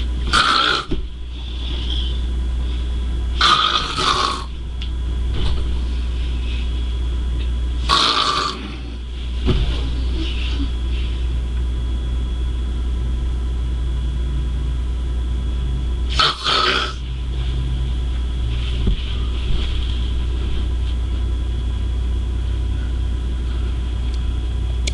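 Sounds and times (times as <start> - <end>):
steady low rumble: 0.0 - 24.9
loud harsh snort: 0.3 - 0.9, 3.4 - 4.5, 7.9 - 8.9, 16.1 - 17.0
child snoring heavily: 0.3 - 2.2, 3.4 - 4.5, 7.9 - 9.0, 16.1 - 17.0.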